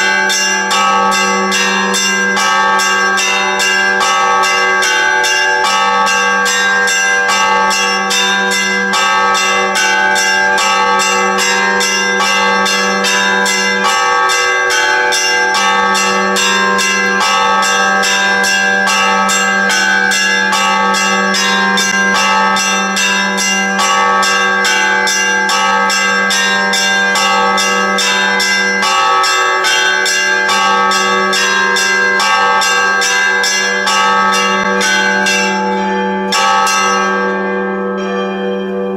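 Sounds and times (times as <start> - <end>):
church bells ringing: 0.0 - 38.9
low humming bell tone: 34.0 - 38.9.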